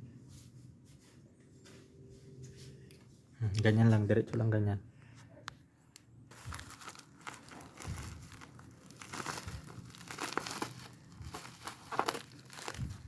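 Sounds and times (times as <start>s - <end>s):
plastic packaging crinkling: 6.3s - 13.0s.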